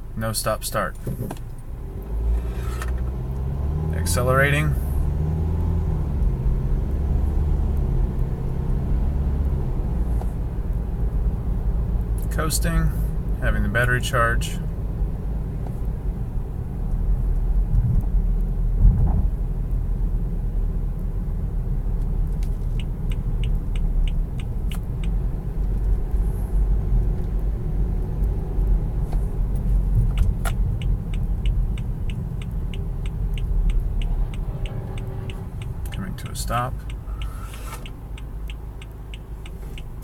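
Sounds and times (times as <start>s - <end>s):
car coasting rumble: 0.0s - 40.0s
regular ticking: 22.0s - 40.0s
sharp click: 33.1s - 40.0s.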